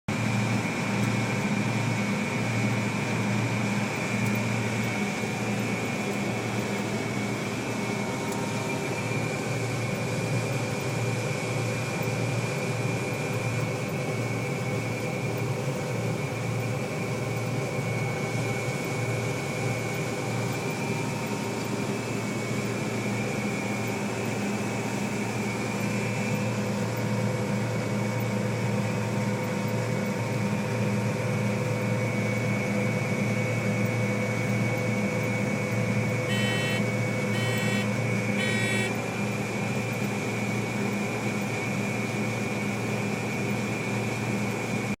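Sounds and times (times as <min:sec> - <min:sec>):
combine harvester drone: 0:00.1 - 0:45.0
high whine: 0:36.3 - 0:39.0.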